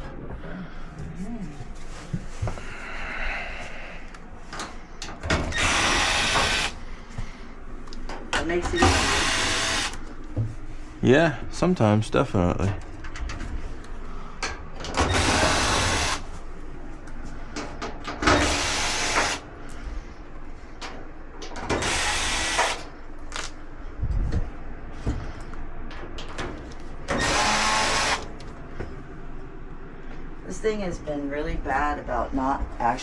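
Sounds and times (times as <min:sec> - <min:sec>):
power drill bursts: 0:05.3 - 0:06.8, 0:08.6 - 0:10.0, 0:15.0 - 0:16.2, 0:18.2 - 0:19.4, 0:21.7 - 0:22.9, 0:27.1 - 0:28.3.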